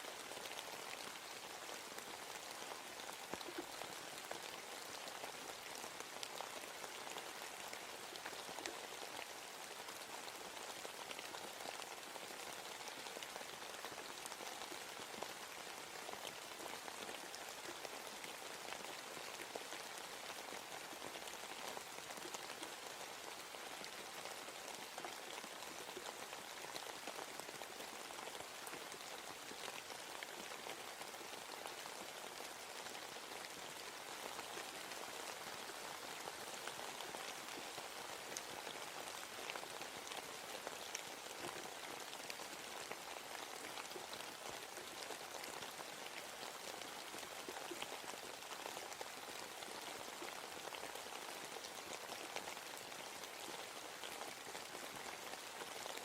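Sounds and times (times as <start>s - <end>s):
rain on leaves: 0.0s - 56.0s.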